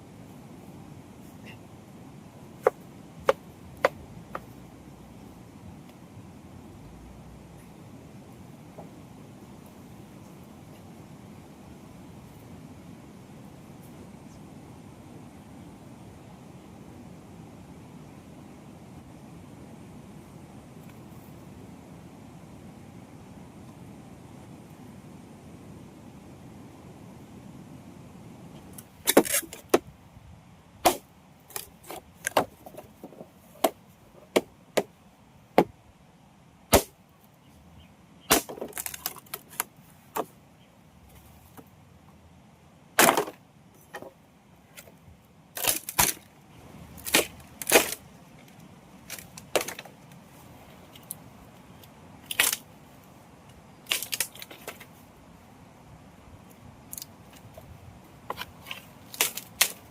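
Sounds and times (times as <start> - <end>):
wood cracking and knocking: 30.9 - 34.9, 38.3 - 40.3, 43.0 - 44.1, 45.6 - 46.3, 47.0 - 48.0, 49.1 - 49.9, 58.3 - 59.8.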